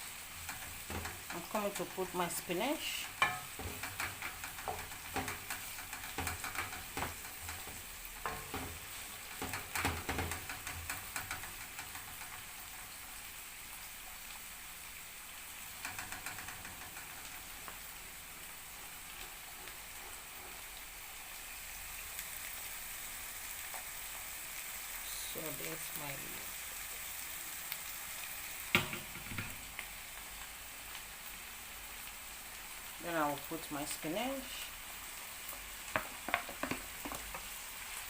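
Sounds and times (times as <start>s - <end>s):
vegetables sizzling in oil: 0.0s - 38.0s
utensil scraping a pan: 0.3s - 13.2s, 15.8s - 21.4s.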